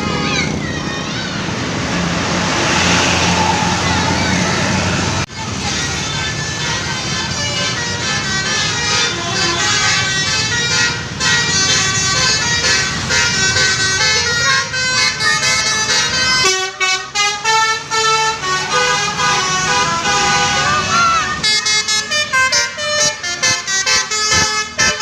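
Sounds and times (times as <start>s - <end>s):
engine and traffic noise: 0.0s - 25.0s
musical vehicle horns: 2.4s - 25.0s.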